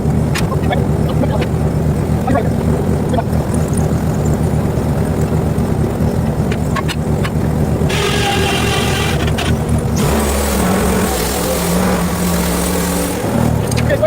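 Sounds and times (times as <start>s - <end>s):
sawmill engine running: 0.0s - 14.0s
rushing rasping saw noise: 7.8s - 14.0s.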